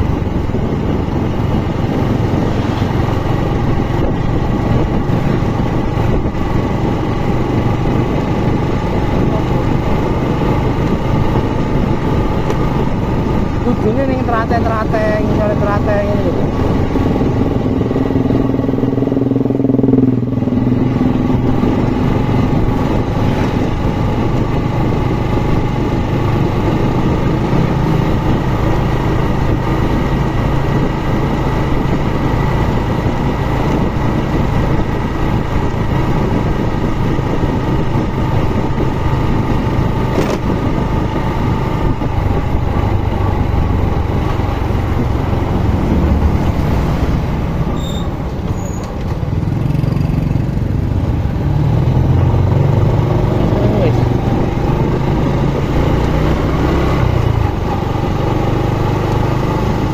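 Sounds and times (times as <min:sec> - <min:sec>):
rushing noise: 0:00.0 - 0:06.2, 0:40.1 - 0:52.7
motorcycle engine running: 0:00.0 - 0:59.9.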